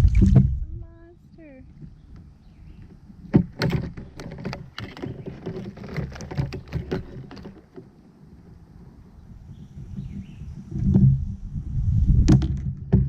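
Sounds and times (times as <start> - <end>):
knocks and rattles on plastic kayak: 0.0 - 0.8, 1.7 - 8.6, 9.9 - 11.4, 12.1 - 13.0.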